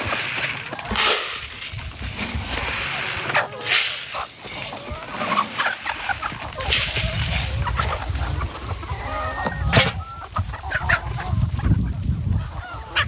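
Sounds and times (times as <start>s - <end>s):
rustling: 0.0s - 11.0s
chickens clucking: 0.0s - 13.0s.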